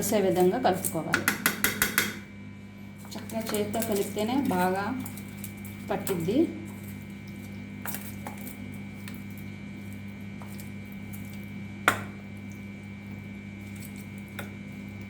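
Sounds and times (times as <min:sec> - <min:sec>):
steady low hum: 0:00.0 - 0:15.0
wet squishing of meat by hand: 0:03.1 - 0:15.0.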